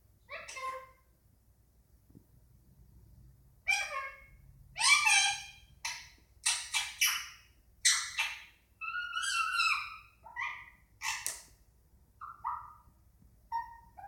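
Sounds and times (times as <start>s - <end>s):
parakeet squawking and warbling: 0.3s - 1.0s, 3.6s - 11.4s, 12.2s - 12.9s, 13.5s - 14.0s.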